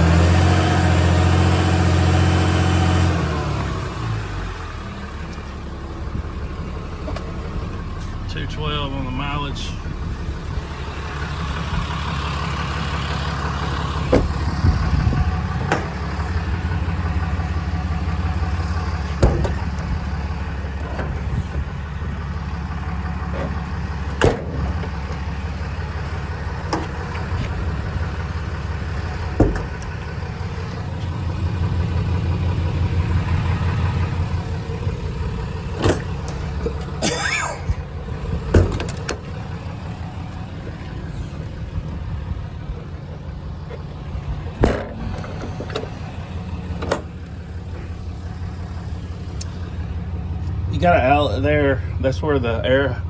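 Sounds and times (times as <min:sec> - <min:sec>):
diesel engine idling: 0:00.0 - 0:53.0
sharp clicks and knocks: 0:15.6 - 0:16.0, 0:46.8 - 0:47.4.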